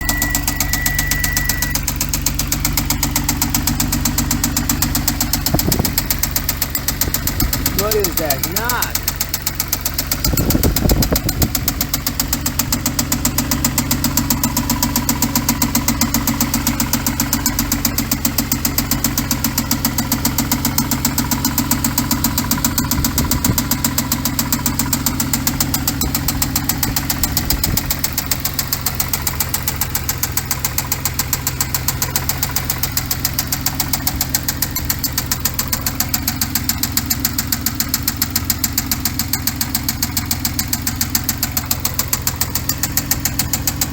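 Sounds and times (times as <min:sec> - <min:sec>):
car engine idling with knock: 0:00.0 - 0:43.9.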